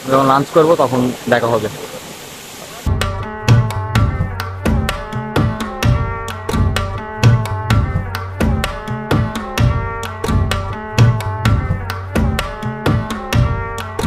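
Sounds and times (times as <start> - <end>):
music with quick drum beat: 2.9 - 14.0.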